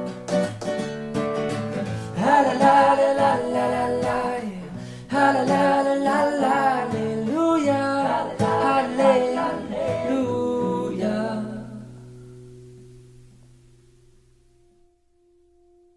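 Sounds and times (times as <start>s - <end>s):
acoustic guitar: 0.0s - 15.9s
person singing: 1.9s - 12.0s.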